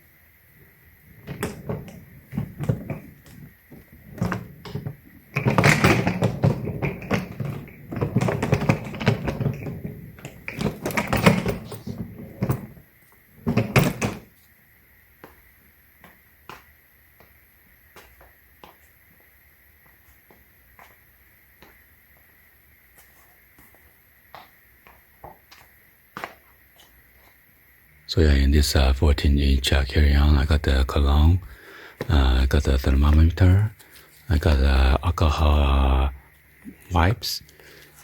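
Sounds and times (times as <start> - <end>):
rustling and scraping: 1.0 - 14.5, 31.4 - 35.0, 36.1 - 38.0
suitcase knocks and clicks: 1.1 - 14.3.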